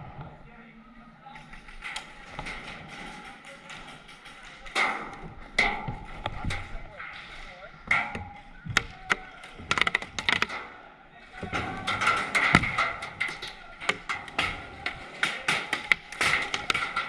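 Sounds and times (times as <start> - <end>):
paintballs smacking into cover: 8.2 - 10.6.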